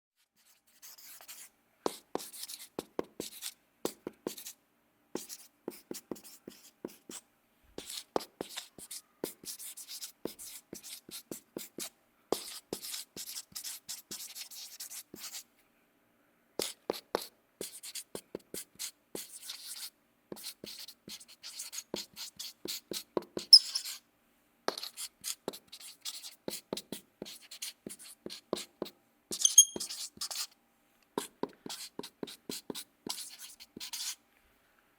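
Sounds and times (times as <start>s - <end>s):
marker writing on a board: 0.4s - 4.6s, 5.2s - 7.2s, 7.8s - 15.5s, 16.6s - 24.0s, 24.7s - 30.6s, 31.2s - 34.2s
marker tip squeak: 23.4s - 24.0s, 29.3s - 30.5s.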